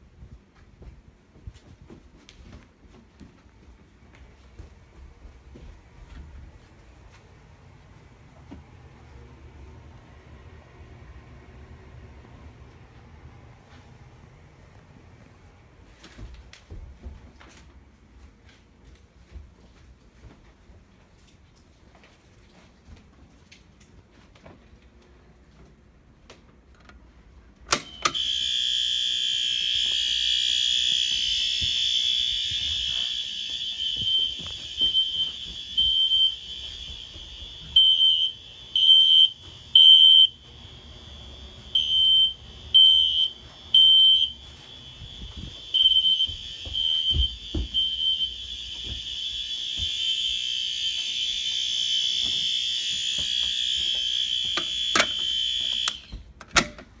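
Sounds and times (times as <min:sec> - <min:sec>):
fire alarm sounder tone: 0:27.7 - 0:56.8.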